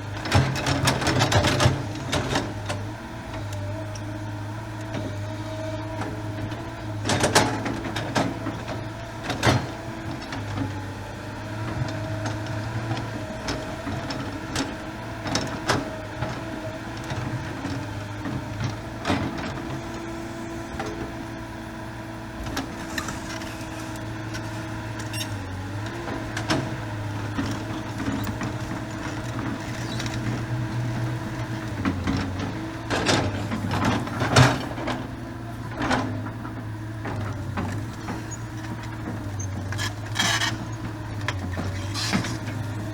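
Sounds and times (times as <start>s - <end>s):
excavator diesel engine running: 0.0s - 42.9s.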